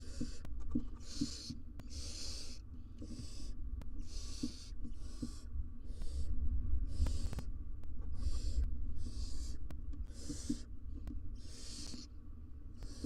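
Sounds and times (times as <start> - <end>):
steady low hum: 0.0 - 13.0
owls hissing: 1.0 - 6.3, 6.9 - 7.5, 8.1 - 10.7, 11.4 - 12.1, 12.8 - 13.0.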